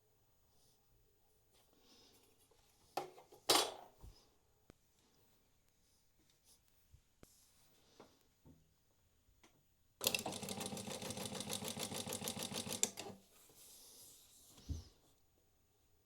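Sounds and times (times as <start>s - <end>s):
sewing machine stitching: 10.0s - 13.2s.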